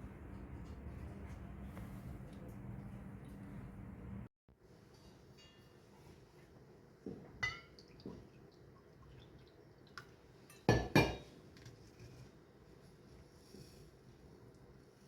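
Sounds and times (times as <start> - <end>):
glassy clink: 7.4 - 7.8, 10.5 - 11.2.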